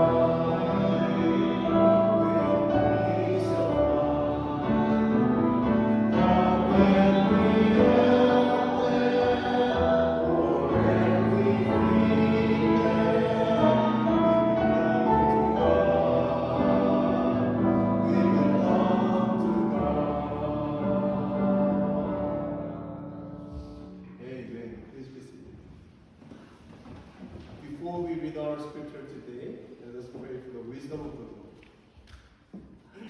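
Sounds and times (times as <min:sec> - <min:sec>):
choir singing a slow hymn: 0:00.0 - 0:24.2.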